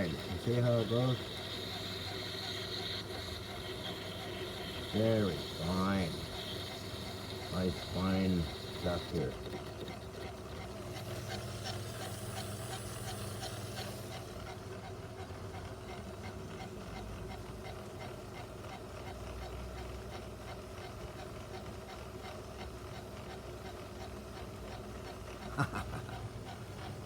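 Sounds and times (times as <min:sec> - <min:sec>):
light regular ticking: 0:00.0 - 0:14.6
metal lathe motor hum: 0:00.0 - 0:17.7.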